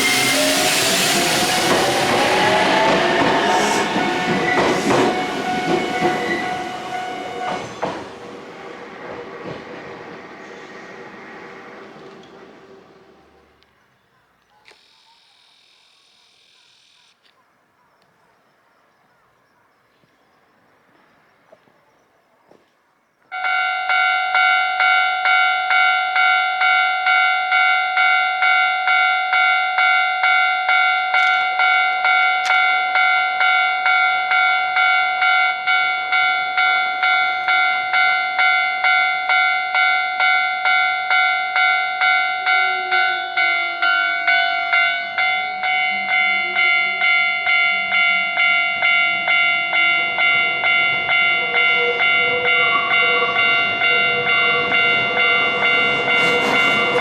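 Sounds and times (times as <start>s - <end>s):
railroad crossing bell clanging: 0.0s - 13.7s, 23.3s - 57.0s.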